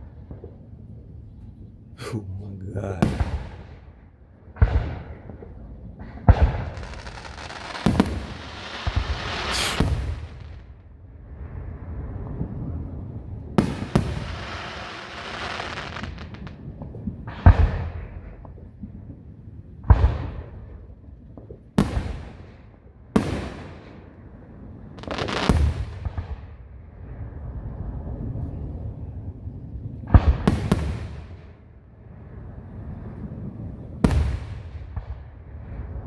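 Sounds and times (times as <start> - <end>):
fireworks bangs: 2.8 - 3.7.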